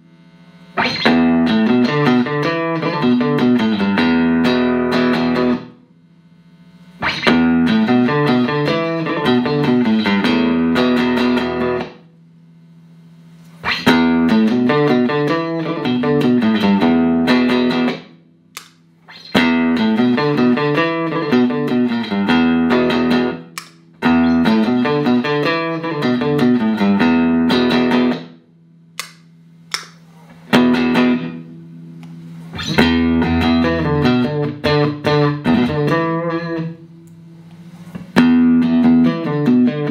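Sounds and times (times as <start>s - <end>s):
clean electric guitar phrases: 0.0s - 12.2s, 13.4s - 39.9s.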